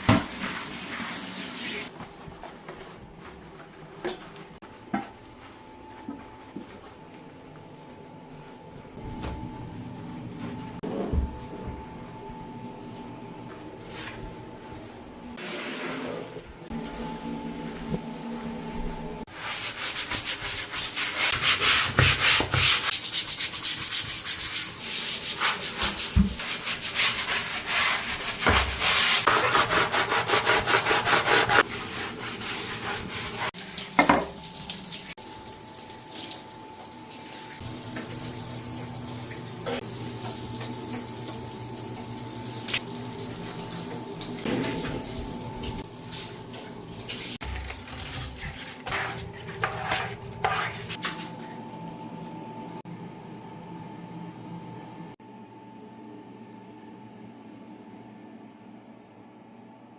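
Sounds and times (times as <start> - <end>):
brisk scrubbing of a surface: 19.3 - 33.8, 44.4 - 51.3.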